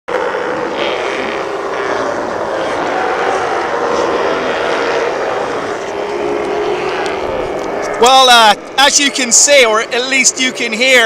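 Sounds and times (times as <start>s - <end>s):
sea lions barking: 0.1s - 8.9s.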